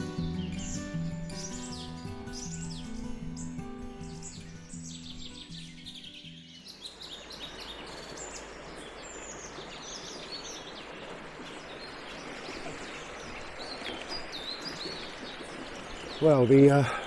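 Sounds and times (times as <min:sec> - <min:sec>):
background music: 0:00.0 - 0:06.7
birds chirping and singing: 0:00.0 - 0:17.0
brook rushing: 0:08.1 - 0:17.0.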